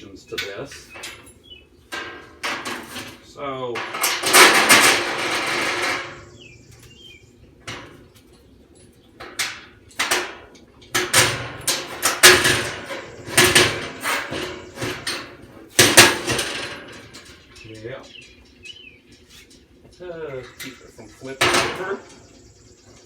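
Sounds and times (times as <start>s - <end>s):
sharp metal knocks: 3.8s - 6.5s, 9.2s - 18.1s, 20.5s - 22.4s.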